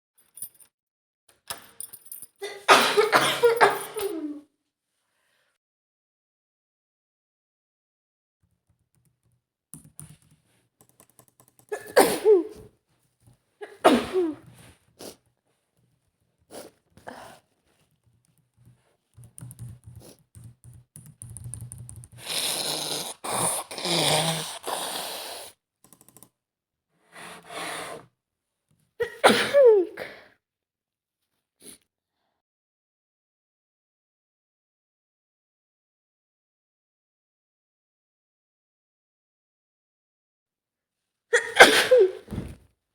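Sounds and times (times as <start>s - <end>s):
woman sneezing: 2.4s - 4.4s, 11.7s - 12.6s, 13.6s - 14.5s, 29.0s - 30.2s, 41.4s - 42.5s.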